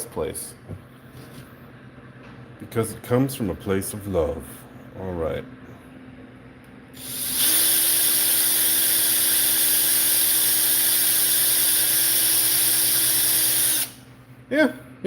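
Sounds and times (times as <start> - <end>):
electric power tool running: 7.0 - 14.0.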